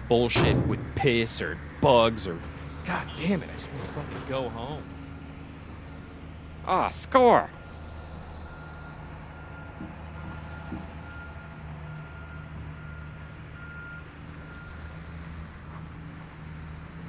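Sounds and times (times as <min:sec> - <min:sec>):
low engine hum: 0:00.0 - 0:17.0
reversing alarm beeping: 0:07.5 - 0:15.2.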